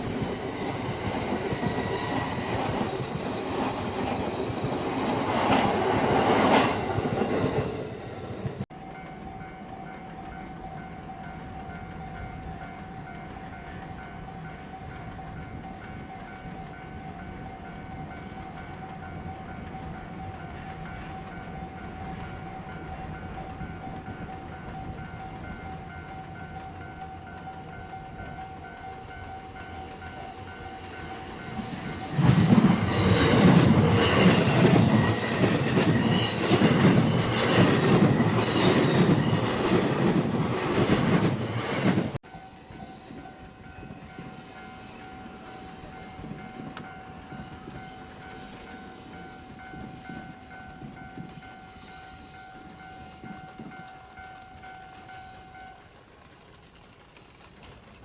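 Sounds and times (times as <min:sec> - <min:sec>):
train passing loudly: 0:00.0 - 0:58.0
wheels squealing: 0:12.9 - 0:54.8.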